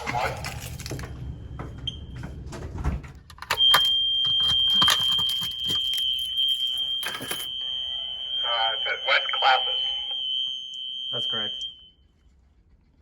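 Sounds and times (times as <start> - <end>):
fire alarm high-pitched tone: 3.3 - 12.2.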